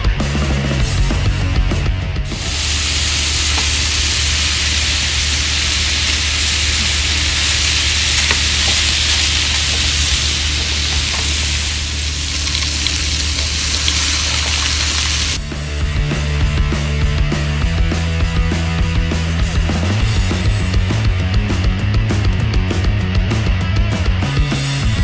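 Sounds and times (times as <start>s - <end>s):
pork sizzling in a pan: 2.3s - 15.4s.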